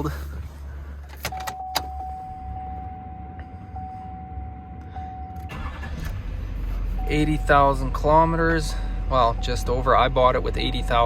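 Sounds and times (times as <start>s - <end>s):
key clicking in ignition: 1.0s - 2.1s.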